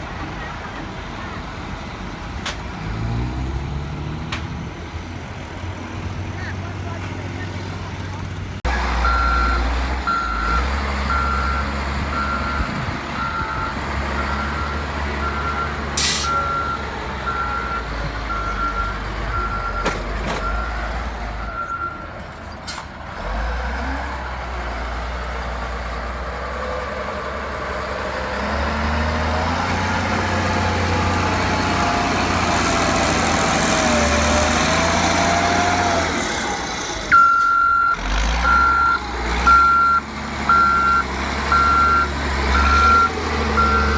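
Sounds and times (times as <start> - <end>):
construction vehicle engine running: 0.0 - 43.9
reversing alarm beeping: 9.0 - 20.8, 37.1 - 43.9.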